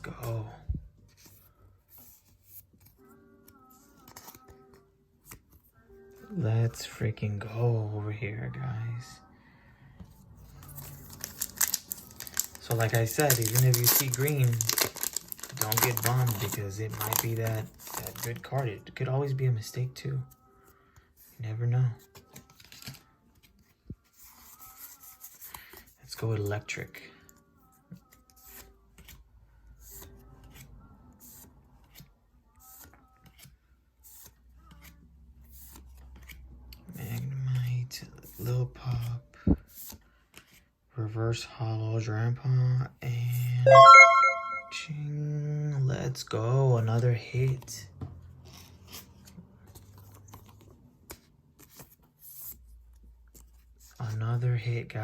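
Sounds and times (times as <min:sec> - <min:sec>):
trading cards clicking and rustling: 0:10.5 - 0:18.4
foil wrapper crinkling: 0:10.7 - 0:18.5.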